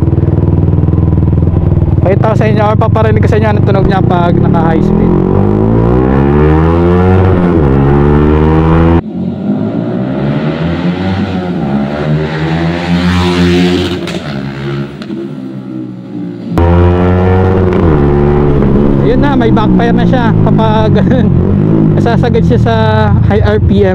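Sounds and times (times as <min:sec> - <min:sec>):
motorcycle engine revving hard: 0:00.0 - 0:09.0, 0:09.6 - 0:15.5, 0:16.6 - 0:23.2
exhaust backfire pops: 0:16.6 - 0:20.0.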